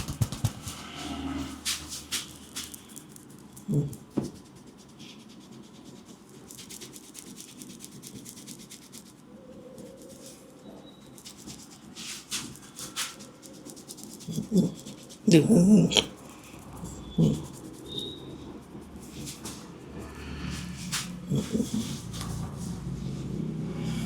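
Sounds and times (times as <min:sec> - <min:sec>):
loud knocks: 0:00.0 - 0:01.0
hands rubbing skin and hair: 0:00.0 - 0:09.2, 0:09.8 - 0:23.4.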